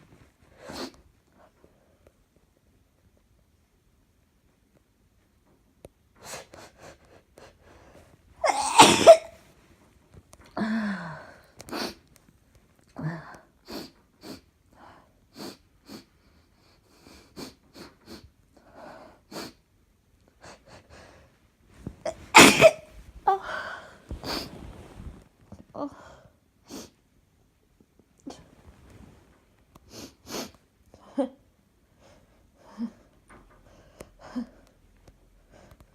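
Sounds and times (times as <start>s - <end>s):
person sneezing loudly: 8.4s - 9.3s, 22.1s - 22.9s.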